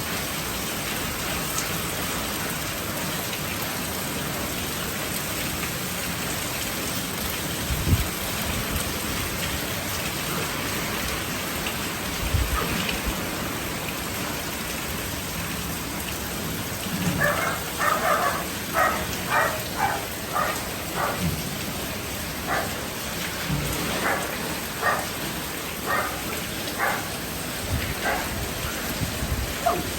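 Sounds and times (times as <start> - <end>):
steady rain falling: 0.0 - 29.9
dog barking: 17.2 - 21.3, 22.4 - 22.9, 23.9 - 25.2, 25.8 - 27.2, 28.0 - 28.4, 29.6 - 29.9.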